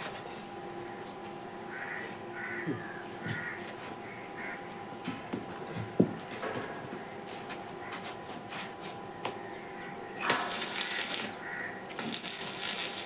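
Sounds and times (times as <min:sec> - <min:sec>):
welding arc crackling: 0:10.2 - 0:13.0.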